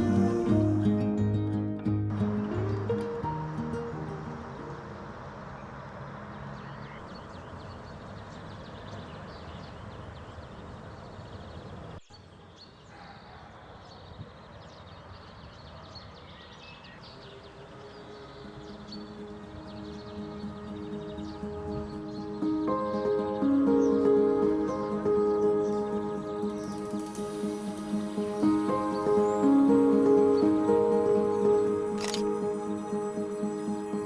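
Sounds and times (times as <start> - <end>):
soft music: 0.0 - 6.0, 17.2 - 34.0
small birds chirping: 2.1 - 34.0.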